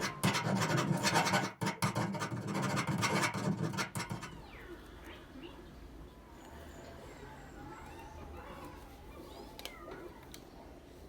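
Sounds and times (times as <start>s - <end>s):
scratching and rubbing strokes: 0.0s - 4.4s.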